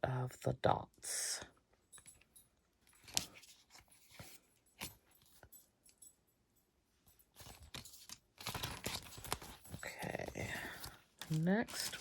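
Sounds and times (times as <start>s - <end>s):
packaging rustling: 7.4s - 12.0s.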